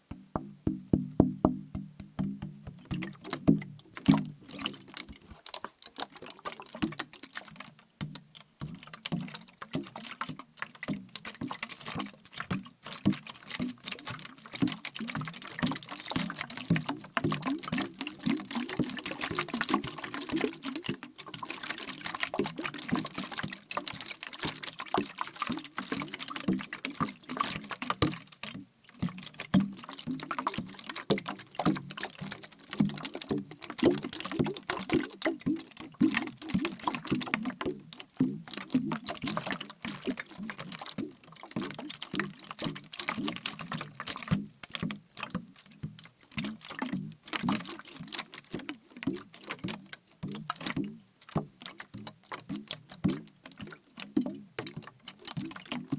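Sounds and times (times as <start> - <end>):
clicks and taps on plastic: 0.0 - 5.7
liquid sloshing in plastic bottle: 0.0 - 55.9.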